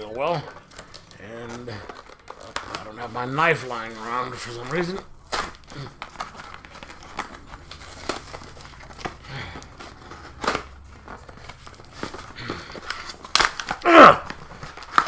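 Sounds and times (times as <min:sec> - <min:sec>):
cardboard box being torn open: 0:00.3 - 0:15.0.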